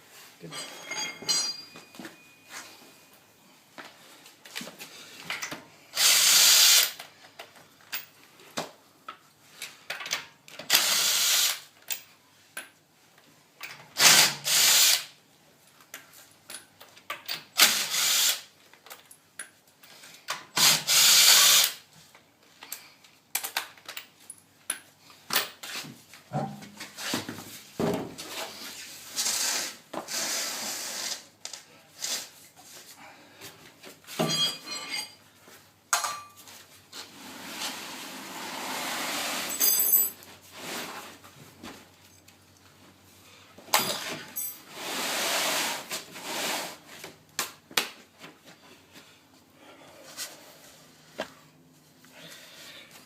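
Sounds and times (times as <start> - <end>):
power tool spinning lug nuts: 6.0 - 7.0, 10.7 - 11.7, 14.0 - 15.1, 17.6 - 18.5, 20.6 - 21.8.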